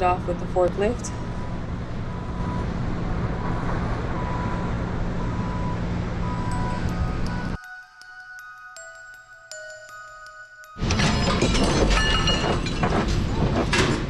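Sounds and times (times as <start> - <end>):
heavy engine rumbling: 0.0 - 7.6, 10.8 - 14.0
light chiming music: 6.4 - 12.5.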